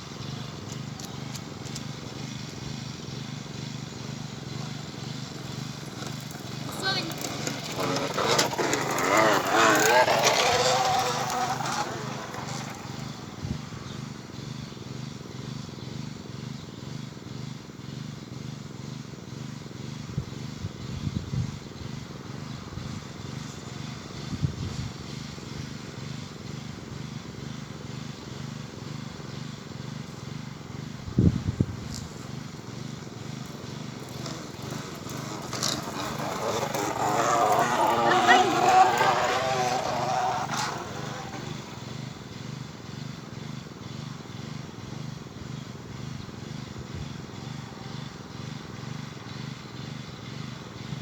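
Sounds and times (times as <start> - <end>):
bottle buzzing against bicycle spokes: 5.1 - 13.3, 33.2 - 42.0.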